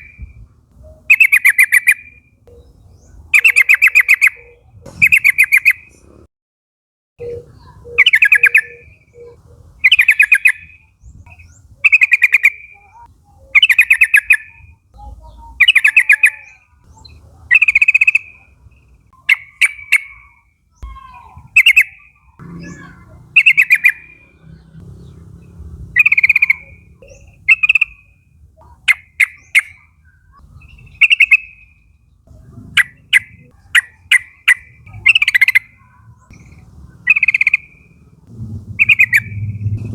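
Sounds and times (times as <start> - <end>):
bird chattering call: 0.8 - 6.0, 7.2 - 10.7, 19.2 - 38.2, 38.8 - 39.9.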